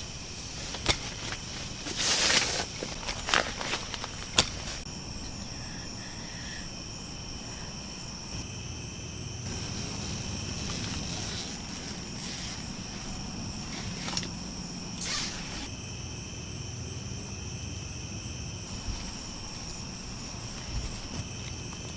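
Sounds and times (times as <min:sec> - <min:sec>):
faint rustles or footsteps: 0:00.0 - 0:04.9, 0:09.5 - 0:15.7, 0:18.7 - 0:21.9
crickets chirping: 0:00.0 - 0:21.9.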